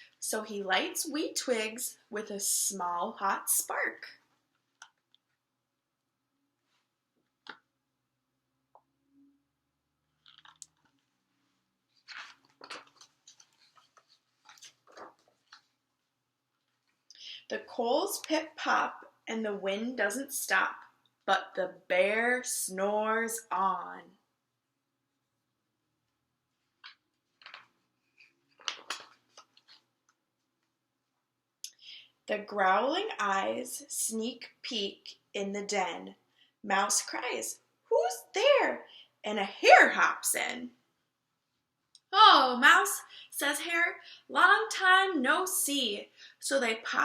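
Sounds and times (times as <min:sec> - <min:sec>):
paper pages rustling: 0:11.8 - 0:17.1, 0:26.5 - 0:30.8.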